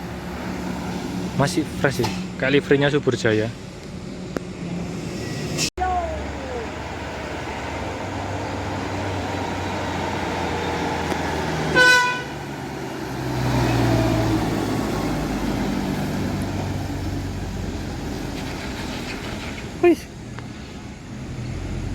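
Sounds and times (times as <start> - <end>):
deep engine rumble of traffic: 0.0 - 21.9
heavy vehicle passing: 0.0 - 21.9
vehicle horn toot: 11.7 - 12.4.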